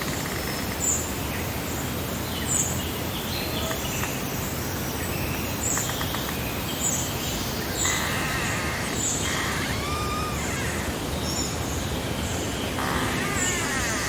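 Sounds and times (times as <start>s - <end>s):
breeze hiss: 0.0s - 14.0s
birds calling: 2.4s - 14.0s
harsh rough bird call: 7.8s - 11.1s, 12.8s - 14.0s
short high-pitched bird call: 9.3s - 10.9s.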